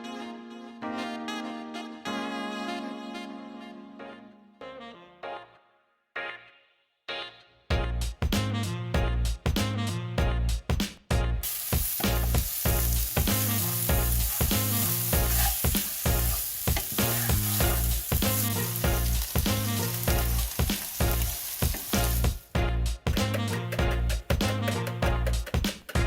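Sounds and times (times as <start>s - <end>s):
background music with steady beat: 6.2s - 26.0s
food sizzling in a frying pan: 11.4s - 22.4s.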